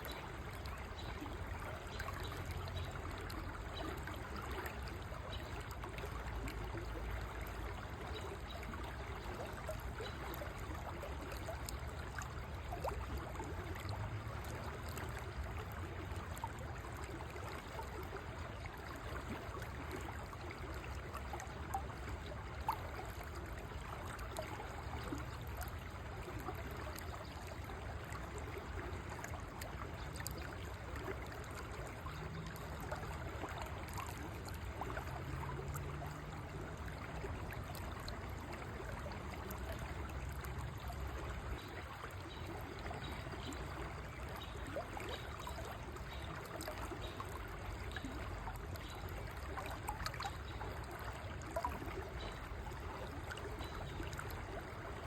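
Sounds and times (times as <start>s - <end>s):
water trickling: 0.0s - 55.0s
river water rushing: 28.3s - 42.2s.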